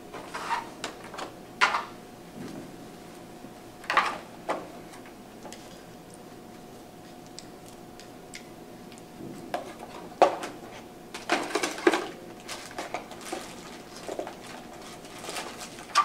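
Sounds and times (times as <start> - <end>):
equipment being handled and packed: 11.2 - 16.0.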